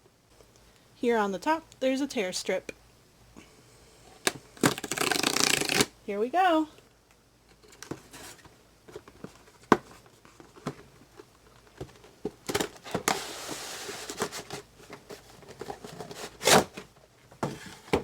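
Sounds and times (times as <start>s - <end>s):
cardboard tear strip tearing: 4.7s - 5.9s.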